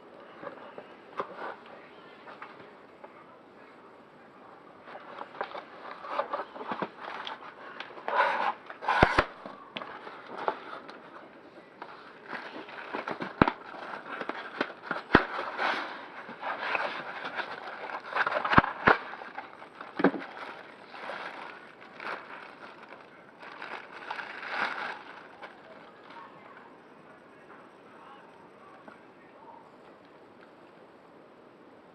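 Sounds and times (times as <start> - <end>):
cardboard and plastic crinkling: 0.2 - 3.3, 4.8 - 26.8.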